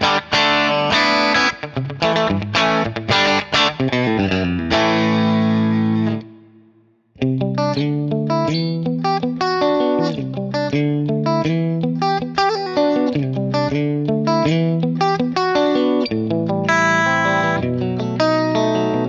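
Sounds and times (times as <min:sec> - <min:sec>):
clean electric guitar: 0:00.0 - 0:19.0.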